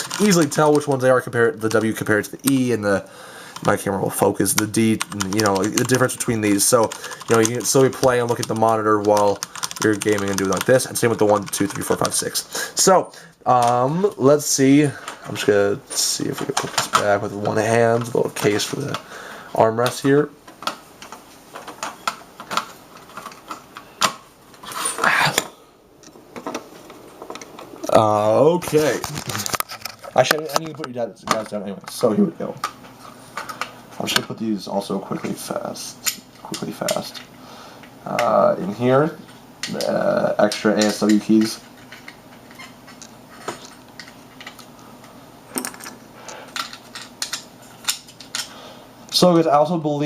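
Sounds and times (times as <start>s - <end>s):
plastic keyboard parts clicking: 0.0s - 2.7s, 4.4s - 12.4s, 39.6s - 44.7s, 46.5s - 48.5s
plastic keycaps clicking: 6.8s - 12.3s.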